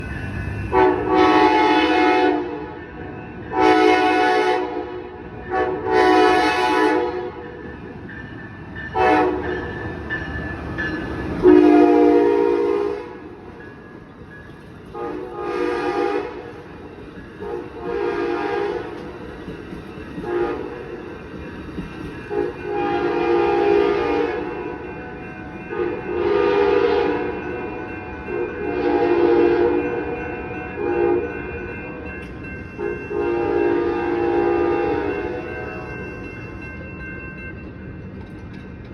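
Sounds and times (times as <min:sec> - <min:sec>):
passing train rumble: 0:00.0 - 0:38.9
locomotive horn blasts: 0:00.7 - 0:02.8, 0:03.5 - 0:07.5, 0:09.0 - 0:09.5, 0:11.4 - 0:13.3, 0:15.0 - 0:16.6, 0:17.4 - 0:19.1, 0:20.2 - 0:20.8, 0:22.3 - 0:24.8, 0:25.7 - 0:30.2, 0:30.8 - 0:31.4, 0:32.8 - 0:35.5.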